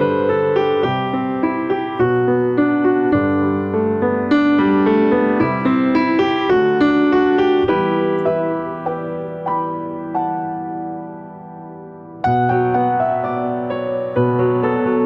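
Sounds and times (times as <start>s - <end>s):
piano music: 0.0s - 15.0s.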